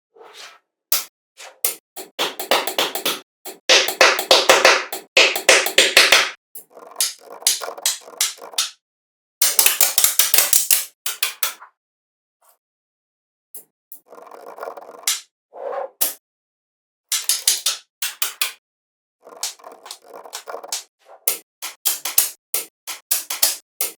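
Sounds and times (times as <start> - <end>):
rapid sharp taps and clicks: 0.9 - 6.4, 7.0 - 8.8, 9.4 - 11.6, 17.1 - 18.6, 19.4 - 23.9.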